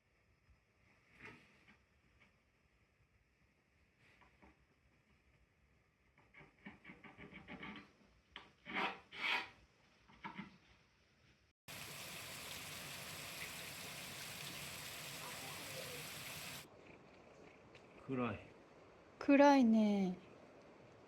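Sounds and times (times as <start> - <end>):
hand woodworking scrapes and knocks: 6.1 - 10.6
heavy rain hissing: 11.7 - 16.7.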